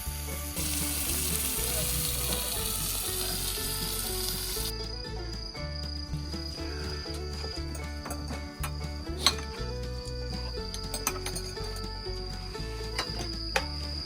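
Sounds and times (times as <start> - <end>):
food sizzling on a grill: 0.0 - 4.7
background music with bass: 0.0 - 14.0.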